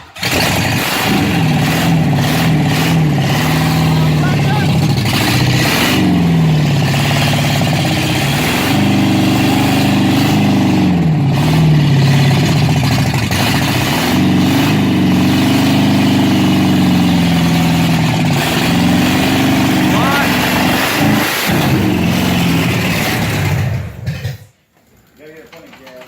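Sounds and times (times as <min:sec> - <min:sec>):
car engine revving: 0:00.0 - 0:24.5.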